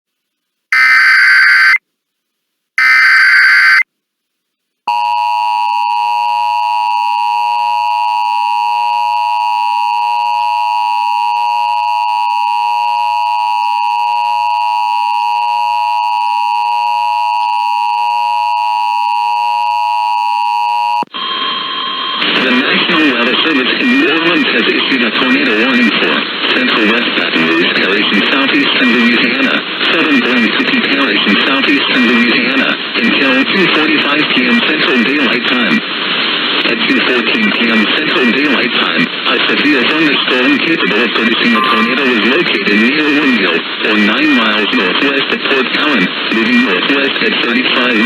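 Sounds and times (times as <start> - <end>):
steady two-tone attention signal: 0.8 - 1.8, 2.8 - 3.8, 41.5 - 42.4
harsh buzzy data bursts: 2.8 - 3.8.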